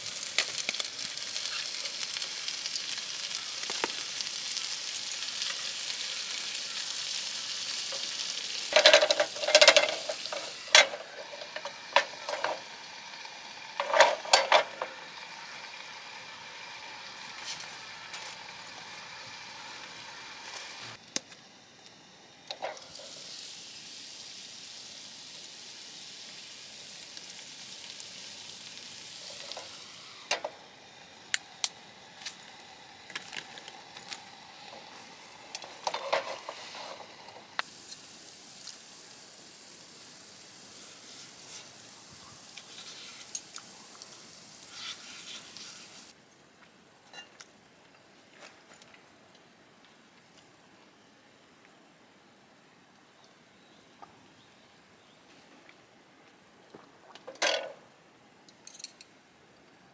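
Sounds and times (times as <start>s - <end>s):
scallops sizzling in a pan: 0.0s - 21.0s, 22.5s - 46.2s.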